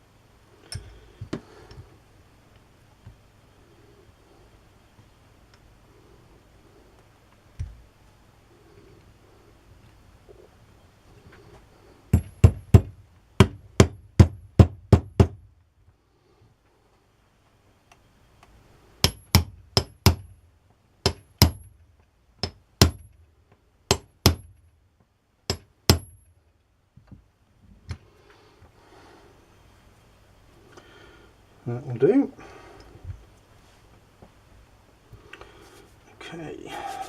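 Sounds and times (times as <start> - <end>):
hammer tapping: 12.1 - 15.4, 19.0 - 20.2, 21.0 - 21.7, 25.5 - 26.1.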